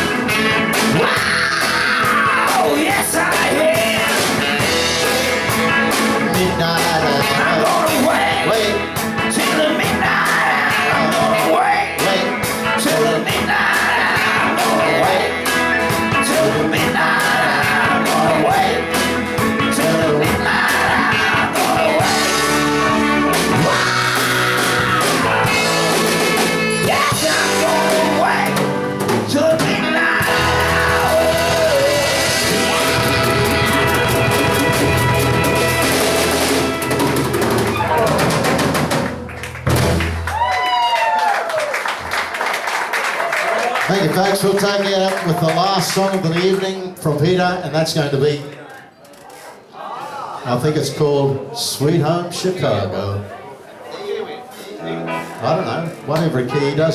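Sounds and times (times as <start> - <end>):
lead singer singing: 0.0 - 35.9
steady drum beat: 0.0 - 40.5
live band playing upbeat rock: 0.0 - 40.7, 54.5 - 56.9.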